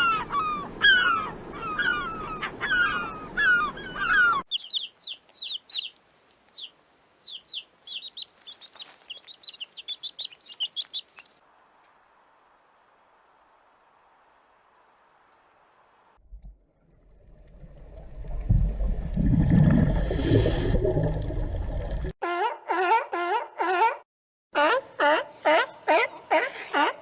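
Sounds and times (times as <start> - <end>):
chickens clucking and calling: 24.6 - 27.0.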